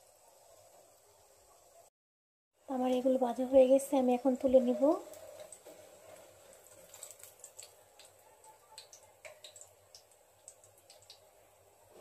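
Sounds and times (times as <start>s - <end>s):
oil crackling in frying pan: 2.7s - 12.0s.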